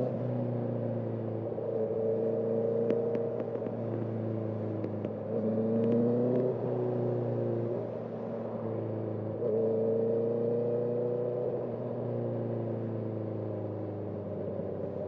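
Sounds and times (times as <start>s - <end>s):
motorcycle engine accelerating hard: 1.8s - 7.8s.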